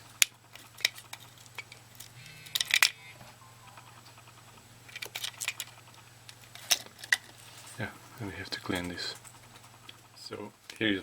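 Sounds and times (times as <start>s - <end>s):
steady low hum: 0.0s - 11.0s
plastic clicks and clatter: 0.2s - 3.0s, 4.9s - 7.8s.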